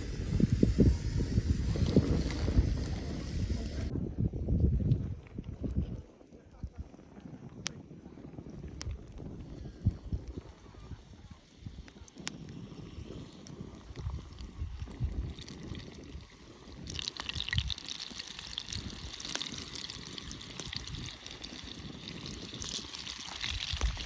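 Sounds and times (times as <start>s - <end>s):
wind rumble on microphone: 0.0s - 24.0s
water trickling: 13.9s - 24.0s.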